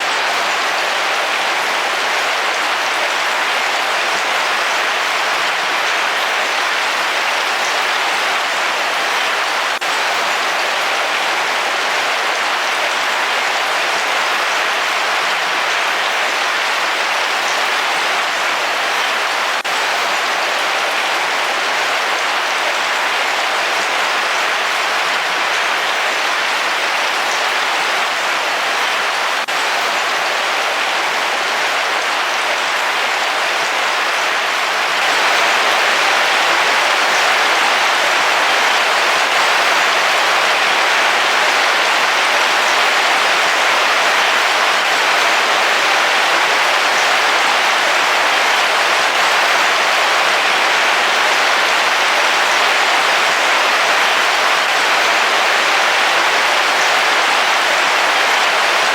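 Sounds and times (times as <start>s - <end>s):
heavy rain on a roof: 0.0s - 58.9s.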